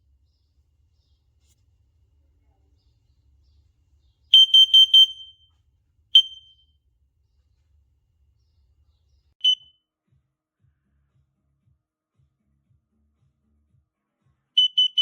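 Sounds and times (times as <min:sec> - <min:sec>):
carbon monoxide alarm beeping: 0:04.4 - 0:05.4, 0:06.2 - 0:06.6, 0:09.4 - 0:09.7, 0:14.6 - 0:15.0.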